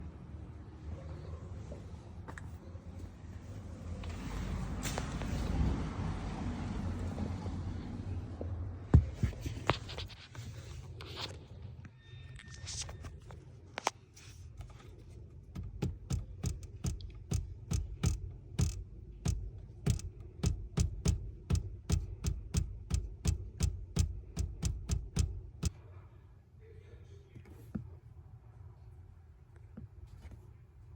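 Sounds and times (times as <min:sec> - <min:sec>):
dashboard rattling clicks: 0:15.5 - 0:25.7.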